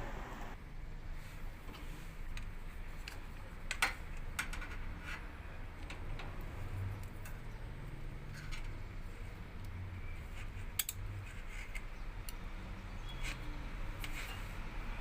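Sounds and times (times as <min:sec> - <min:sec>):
low hum: 0:00.0 - 0:00.6.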